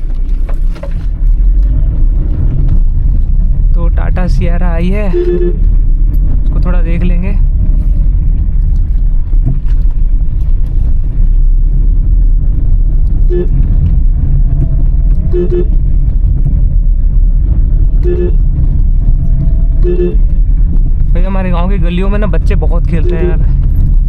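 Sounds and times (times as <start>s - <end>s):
car driving slowly: 0.0s - 24.0s
car horn toots: 5.0s - 5.7s, 13.2s - 13.8s, 15.1s - 15.9s, 17.9s - 18.7s, 19.6s - 20.4s, 22.9s - 23.5s.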